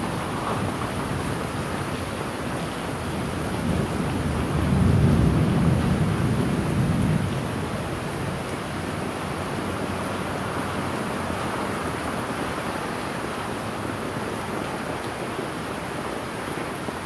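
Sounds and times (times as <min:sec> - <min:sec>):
steady rain hiss: 0:00.0 - 0:17.0
low thunder rumble: 0:03.6 - 0:07.8.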